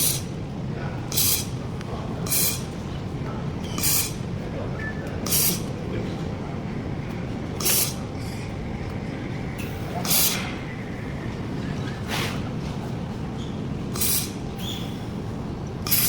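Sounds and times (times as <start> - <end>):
short hissing welding bursts: 0.0 - 0.3, 1.1 - 1.6, 2.3 - 2.7, 3.8 - 4.2, 5.2 - 5.7, 7.6 - 8.0, 10.0 - 10.4, 14.0 - 15.1
low machine hum: 0.0 - 16.0.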